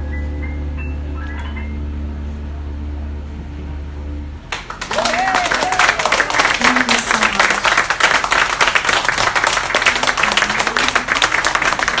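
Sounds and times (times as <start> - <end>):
audience applauding: 4.5 - 12.0.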